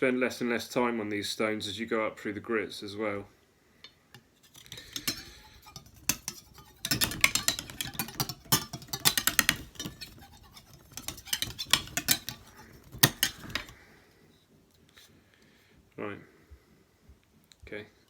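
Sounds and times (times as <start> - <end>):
knife scraping on whetstone: 4.4 - 13.8.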